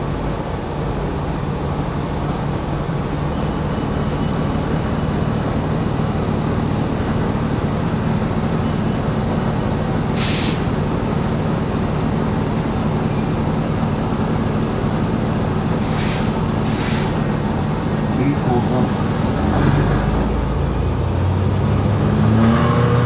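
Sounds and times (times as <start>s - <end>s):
bus drive rumble and road noise: 0.0s - 23.0s
air hiss burst: 10.2s - 10.7s, 15.8s - 17.2s.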